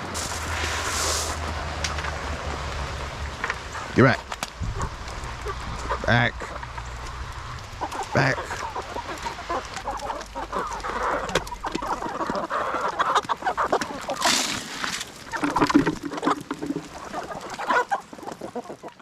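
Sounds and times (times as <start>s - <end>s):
hissing rush of noise: 0.0s - 11.4s
chickens clucking: 0.0s - 19.0s.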